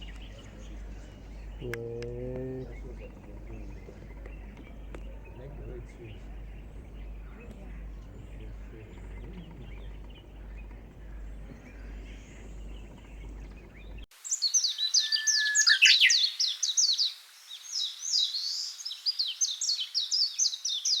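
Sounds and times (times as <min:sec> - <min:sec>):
low outdoor background noise: 0:00.0 - 0:21.0
rapid bird chirping: 0:00.0 - 0:21.0.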